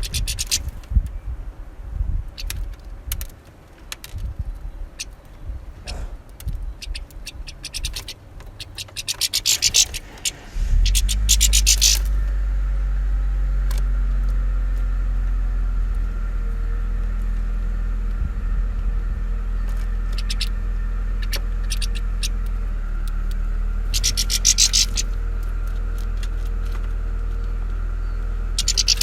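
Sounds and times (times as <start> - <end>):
finches twittering: 0.0 - 0.8, 4.8 - 12.4, 16.4 - 29.0
loud low hum: 4.0 - 29.0.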